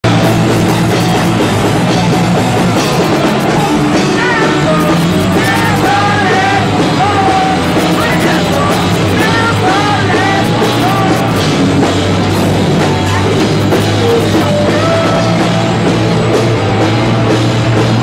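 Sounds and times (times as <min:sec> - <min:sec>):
rock band playing live: 0:00.0 - 0:18.0
person singing: 0:02.9 - 0:11.6, 0:12.7 - 0:16.0.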